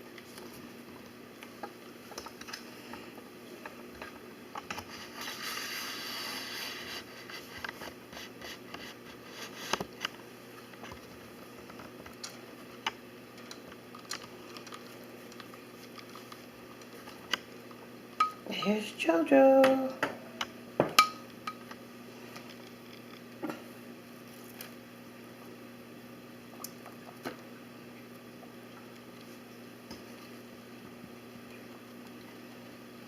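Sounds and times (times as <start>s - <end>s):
light clicks and scratches: 1.4s - 17.5s.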